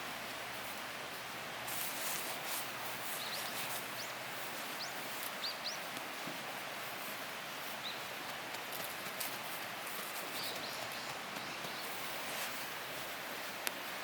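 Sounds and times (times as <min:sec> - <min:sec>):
steady hiss: 0:00.0 - 0:14.0
small bird chirping: 0:03.0 - 0:05.9, 0:10.2 - 0:12.0.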